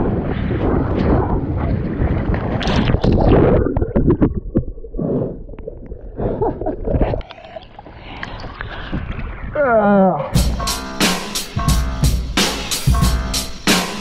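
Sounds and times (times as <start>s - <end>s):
wind buffeting microphone: 0.0s - 5.4s, 8.4s - 9.7s
water splashing against hull: 0.9s - 9.5s.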